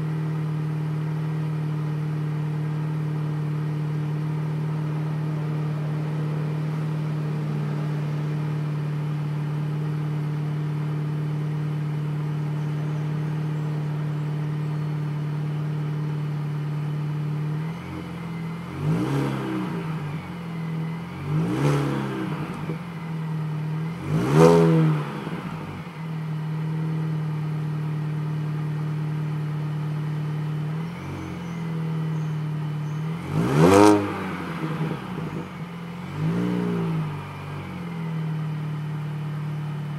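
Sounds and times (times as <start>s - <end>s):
car engine idling: 0.0s - 39.9s
engine revving: 17.5s - 23.0s, 23.6s - 26.0s, 32.8s - 38.3s.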